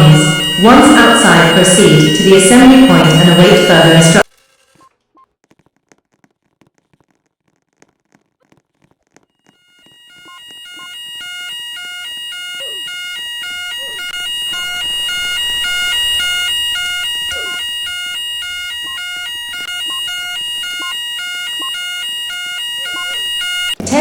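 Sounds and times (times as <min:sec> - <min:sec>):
fire alarm pulsed tones: 0:00.0 - 0:04.3, 0:09.4 - 0:24.0.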